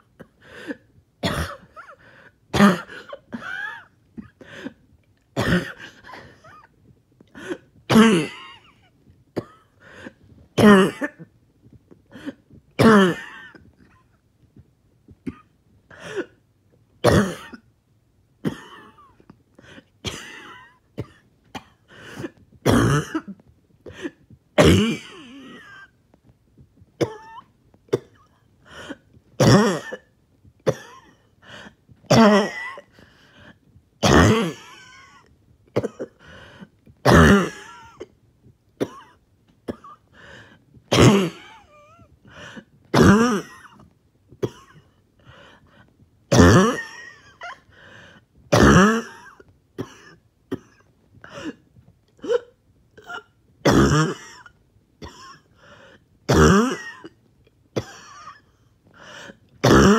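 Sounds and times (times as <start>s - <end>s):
person coughing: 0.2s - 4.8s, 5.4s - 6.7s, 7.3s - 11.3s, 12.1s - 14.2s, 15.2s - 16.4s, 17.0s - 17.6s, 18.4s - 26.0s, 27.0s - 38.2s, 38.8s - 45.6s, 46.3s - 51.6s, 52.2s - 59.9s
throat clearing: 0.2s - 4.8s, 5.4s - 6.7s, 7.3s - 11.3s, 18.4s - 26.0s, 27.0s - 38.1s, 38.8s - 47.9s, 48.5s - 51.6s, 52.2s - 57.2s, 57.8s - 59.9s.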